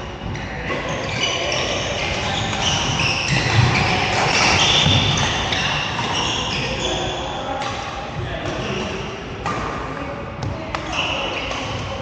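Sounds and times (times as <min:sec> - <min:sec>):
shoes squeaking on court floor: 0:00.3 - 0:07.8, 0:10.8 - 0:12.0.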